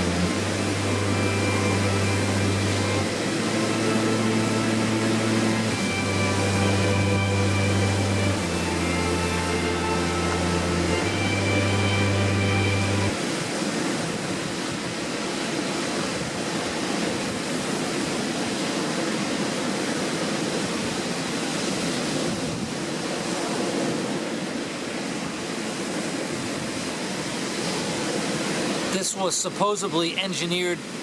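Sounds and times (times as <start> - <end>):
wind rushing over microphone: 20.5 - 24.6.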